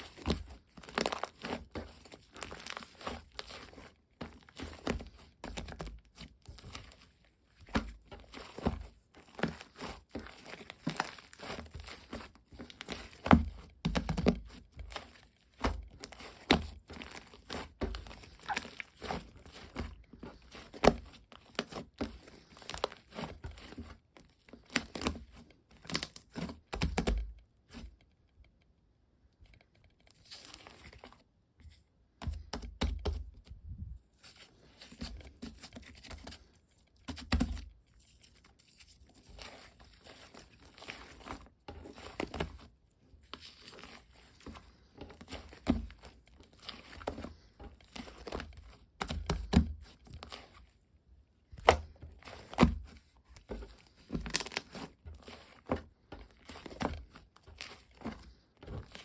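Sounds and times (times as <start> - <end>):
slime squishing: 0.0 - 28.0, 39.0 - 59.0.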